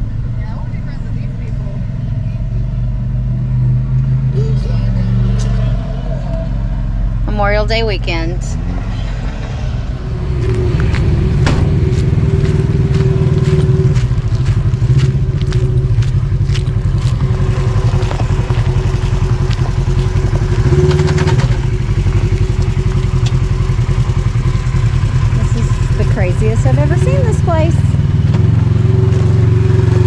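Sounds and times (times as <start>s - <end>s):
car engine and road drone: 0.0s - 30.0s
knocks and clatter from bumps: 10.8s - 18.8s.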